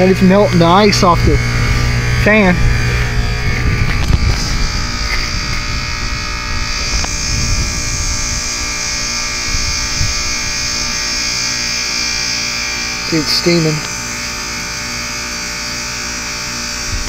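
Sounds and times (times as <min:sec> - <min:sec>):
heat pump humming and buzzing: 0:00.0 - 0:17.0.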